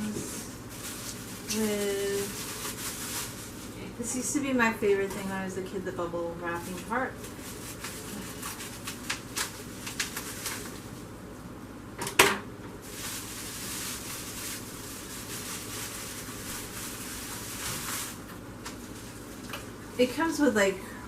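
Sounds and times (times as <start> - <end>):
plastic packaging rustling and crinkling: 0.0 - 4.1, 6.5 - 11.1, 12.8 - 20.5.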